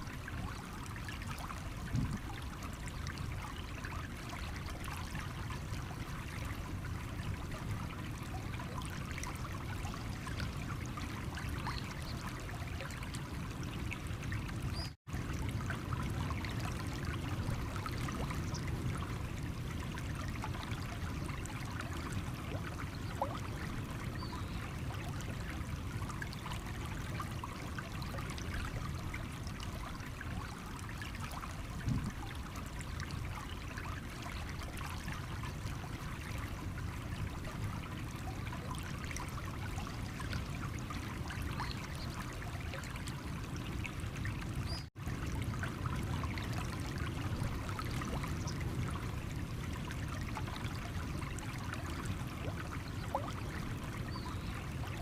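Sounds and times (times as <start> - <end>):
stream water over stones: 0.0 - 55.0.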